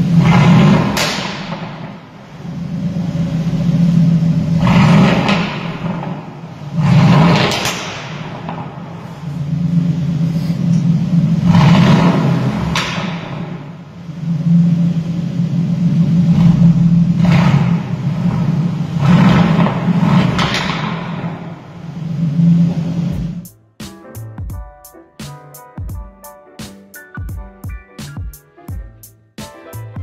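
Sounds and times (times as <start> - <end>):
car engine revving: 0.0 - 23.5
sharp exhaust cracks: 0.0 - 24.3.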